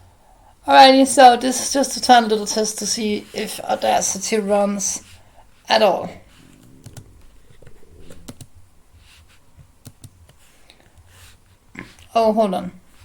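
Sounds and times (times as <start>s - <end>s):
computer keyboard clicks: 8.2s - 8.5s, 9.8s - 10.4s.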